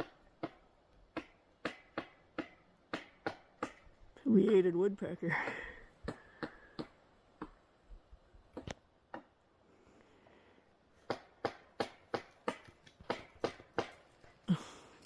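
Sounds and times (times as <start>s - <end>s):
woodpecker hammering wood: 0.0s - 7.7s, 11.0s - 14.2s.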